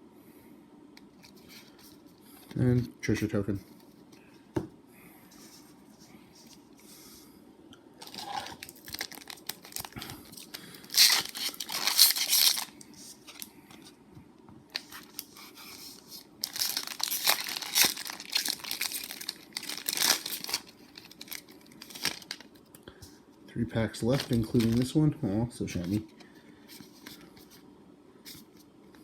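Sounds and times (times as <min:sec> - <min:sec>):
foil wrapper tearing and crinkling: 0:08.0 - 0:13.5, 0:14.7 - 0:22.6, 0:24.1 - 0:24.9.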